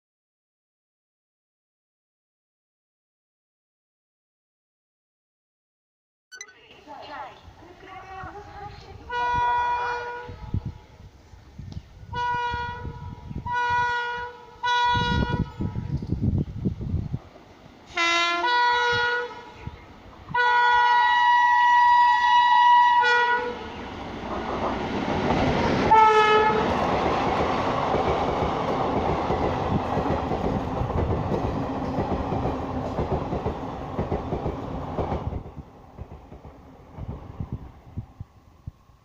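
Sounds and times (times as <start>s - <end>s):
train rumble and wheel clatter: 11.4s - 38.9s
locomotive horn blasts: 12.1s - 15.5s, 17.9s - 19.6s, 20.3s - 23.6s, 25.9s - 26.6s.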